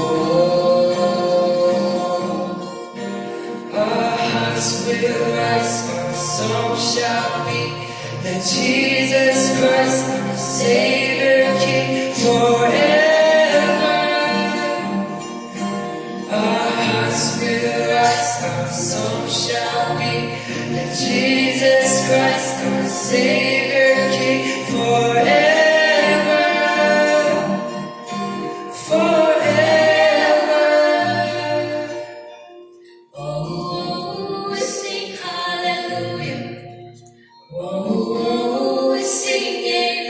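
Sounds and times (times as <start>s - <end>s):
choir singing gospel song: 0.0s - 2.7s, 3.6s - 32.1s, 37.6s - 40.0s
instrumental backing: 5.6s - 35.0s.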